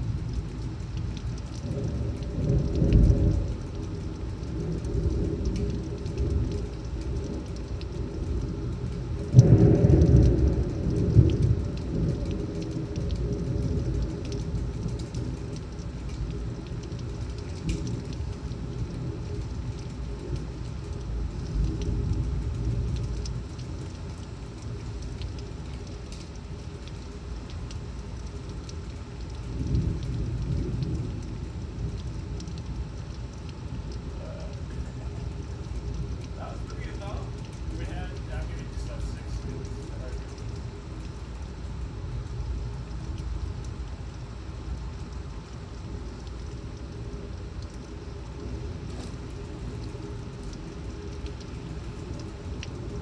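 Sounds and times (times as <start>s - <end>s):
thunder clap and rumble: 0.0s - 44.0s, 44.6s - 53.0s
heavy rain pouring: 0.0s - 53.0s.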